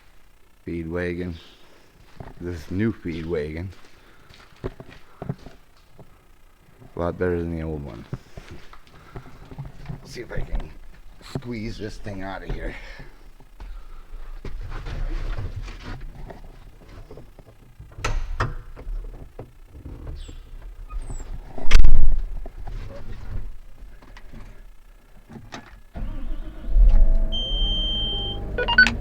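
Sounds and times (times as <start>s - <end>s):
diesel engine starting and running: 26.0s - 29.0s
short steady beep: 27.4s - 29.0s.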